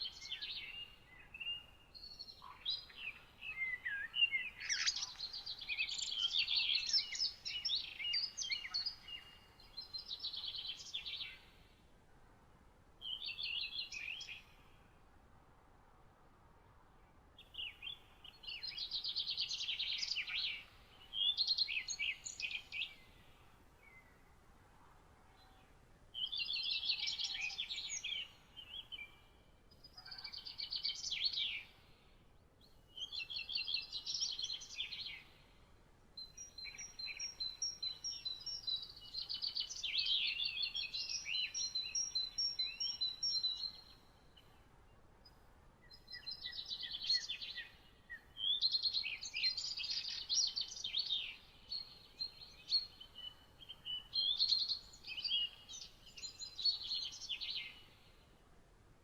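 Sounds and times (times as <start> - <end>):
songbirds trilling: 0.0 - 11.6
faint steady hiss: 0.0 - 59.0.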